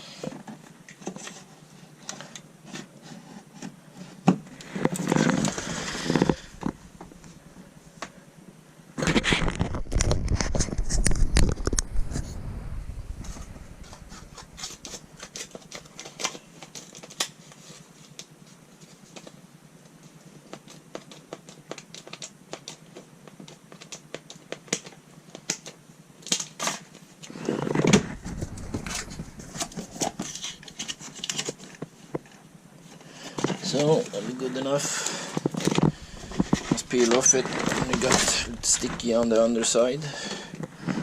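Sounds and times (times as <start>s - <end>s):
mat rustling: 27.3s - 32.0s, 33.5s - 41.0s.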